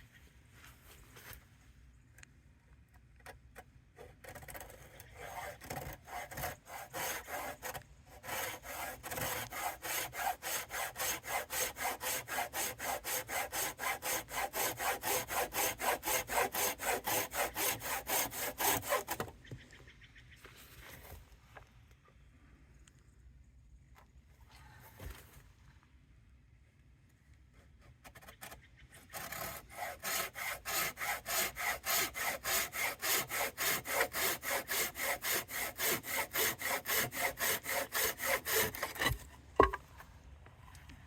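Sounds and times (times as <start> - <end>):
hand saw sawing: 4.0 - 19.3, 28.0 - 39.8.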